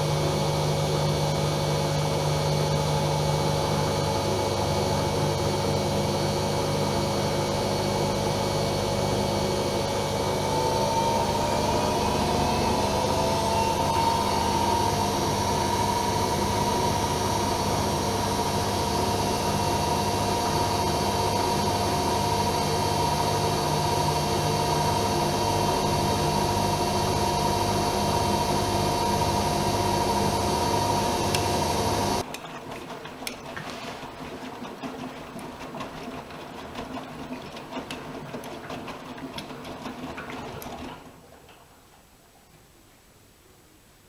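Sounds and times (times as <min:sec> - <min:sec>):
washing machine motor whining: 0:00.0 - 0:32.3
washing machine running roughly: 0:00.0 - 0:41.3.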